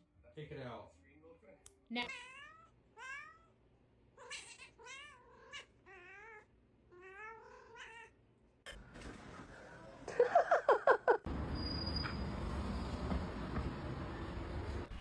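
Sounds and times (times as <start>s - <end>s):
cat meowing: 2.0s - 3.6s, 4.2s - 8.2s.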